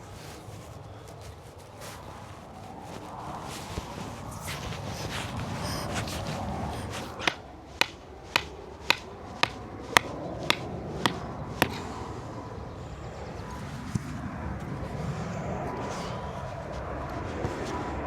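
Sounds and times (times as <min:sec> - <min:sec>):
mallet hammering a stake: 0:07.2 - 0:11.8.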